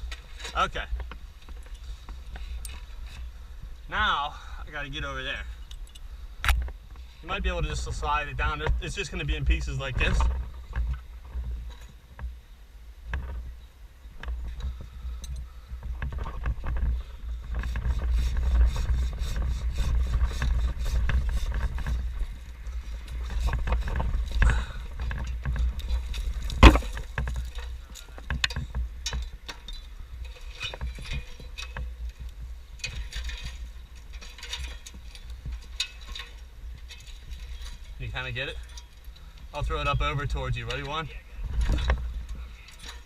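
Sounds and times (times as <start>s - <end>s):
knocks scrapes and rustling: 0.0s - 3.3s, 14.2s - 43.0s
steady low rumble: 0.0s - 30.4s
sharp loud knock: 26.6s - 26.9s.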